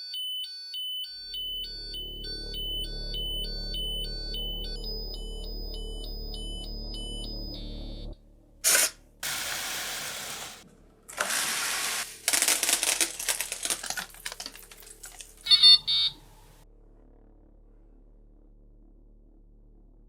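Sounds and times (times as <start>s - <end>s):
alarm clock buzzer double beep: 0.0s - 8.1s, 15.5s - 16.2s
rushing noise bursts: 9.2s - 10.6s.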